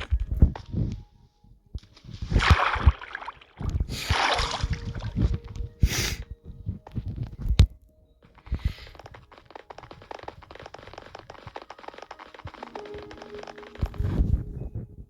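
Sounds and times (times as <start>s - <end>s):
person sniffling and breathing: 5.8s - 6.4s.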